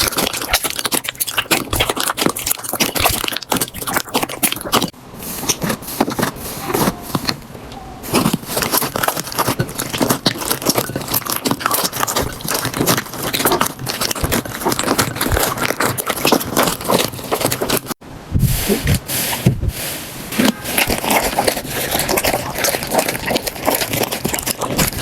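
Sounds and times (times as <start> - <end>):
low squelching thuds: 5.6 - 25.0.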